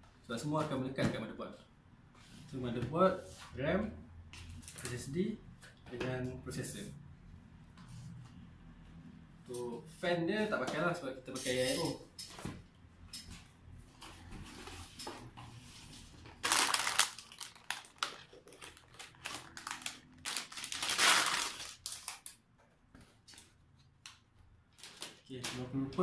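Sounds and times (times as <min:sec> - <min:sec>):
packaging rustling: 0:16.1 - 0:22.4, 0:24.7 - 0:25.6.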